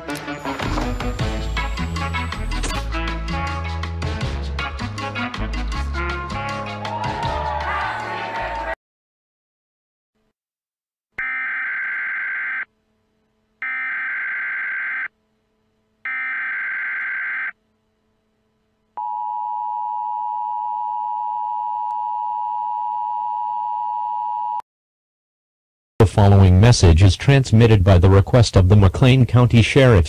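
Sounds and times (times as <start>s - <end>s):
data tone bursts: 0.4s - 2.8s
two-tone attention signal: 0.4s - 2.8s.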